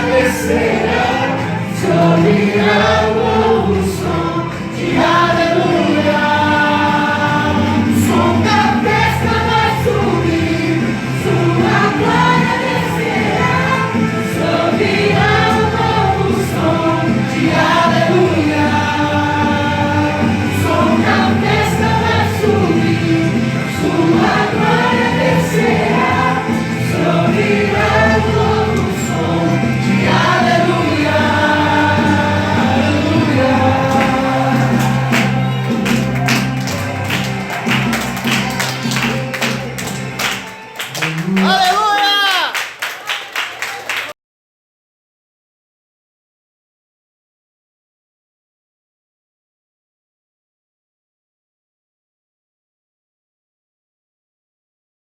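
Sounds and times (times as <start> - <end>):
choir singing worship song: 0.0 - 40.2
instrumental accompaniment: 0.0 - 41.7.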